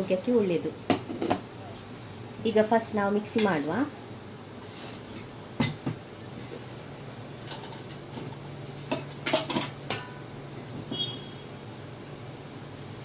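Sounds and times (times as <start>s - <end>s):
kitchen utensils clinking: 3.3s - 3.7s, 7.4s - 8.3s, 8.9s - 10.2s.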